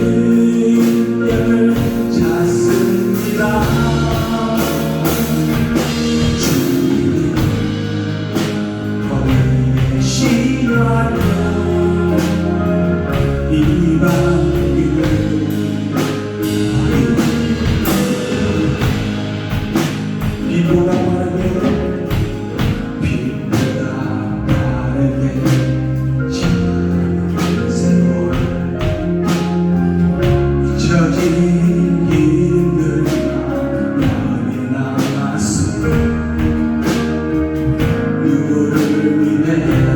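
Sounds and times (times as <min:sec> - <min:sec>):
people singing: 0:00.0 - 0:19.2
praise band playing: 0:00.0 - 0:39.9
drum hits: 0:01.2 - 0:24.9.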